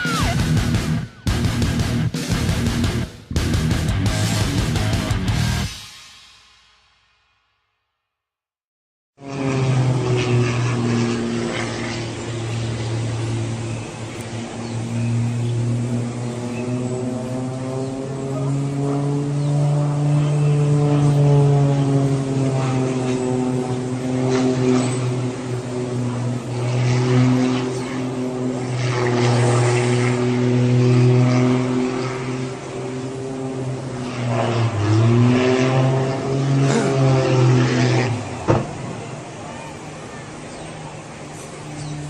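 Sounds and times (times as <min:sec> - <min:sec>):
propeller airplane engine droning: 0:00.0 - 0:05.8, 0:09.2 - 0:42.0
rushing noise: 0:00.0 - 0:07.1.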